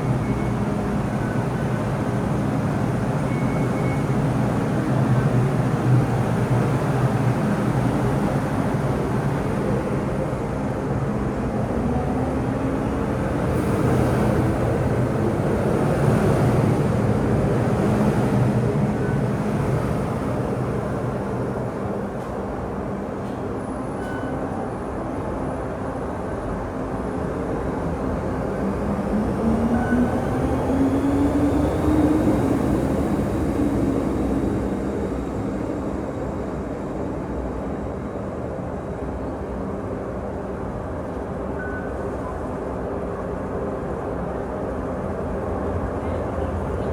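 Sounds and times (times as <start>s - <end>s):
train rolling on track: 0.0s - 24.8s.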